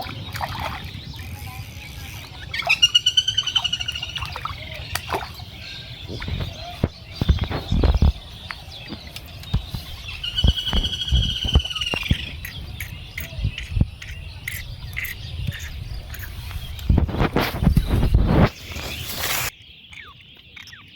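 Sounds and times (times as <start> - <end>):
bird chirps: 0.0 - 20.9
bird squawking: 1.3 - 4.8, 10.0 - 15.8.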